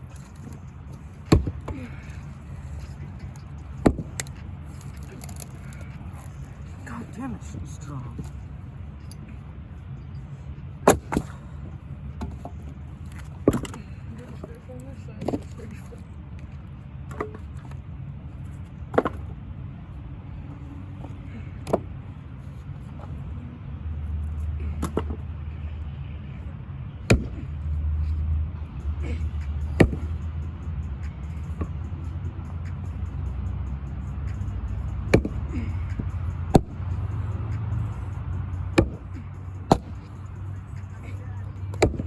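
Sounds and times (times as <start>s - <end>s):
steady low rumble: 0.0s - 42.0s
axe chopping wood: 1.2s - 2.3s, 3.7s - 6.3s, 10.8s - 11.4s, 13.2s - 14.4s, 18.9s - 19.4s, 21.6s - 21.9s, 24.6s - 25.3s, 27.0s - 27.5s, 29.6s - 30.2s, 35.0s - 36.8s, 38.7s - 40.2s, 41.7s - 42.0s.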